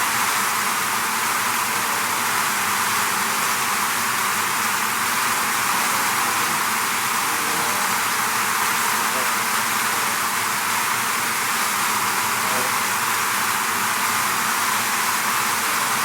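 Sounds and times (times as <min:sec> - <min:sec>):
bees buzzing: 0:00.0 - 0:16.0.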